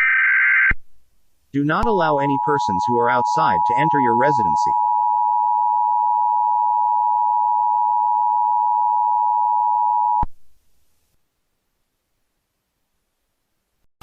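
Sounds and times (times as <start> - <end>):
two-tone electronic alert tone: 1.9 - 10.2.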